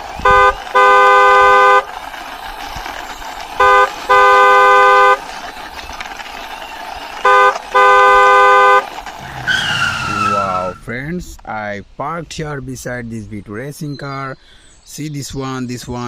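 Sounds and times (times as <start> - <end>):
two-tone car horn honking: 0.2 - 2.0, 3.6 - 5.2, 7.2 - 8.9.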